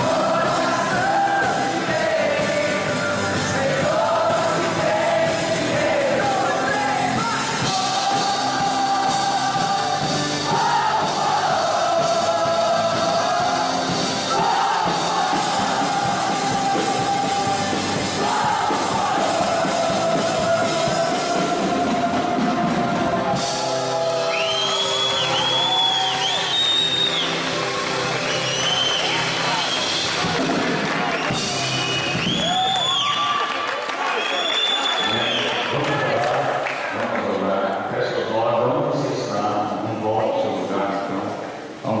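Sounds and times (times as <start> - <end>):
rock band playing live: 0.0 - 32.6.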